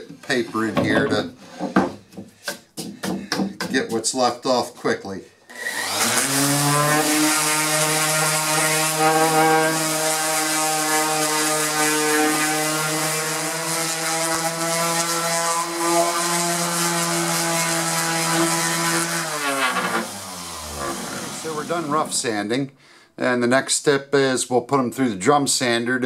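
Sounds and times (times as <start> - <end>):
electric sander running: 5.6 - 22.3.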